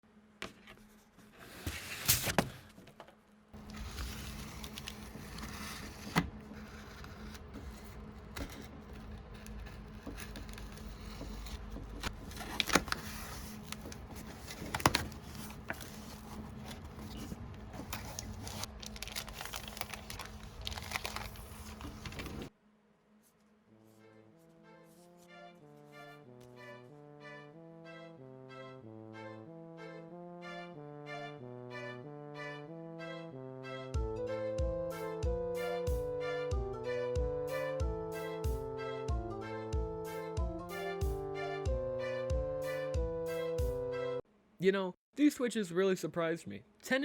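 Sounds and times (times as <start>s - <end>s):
packaging rustling and crinkling: 3.6s - 22.5s.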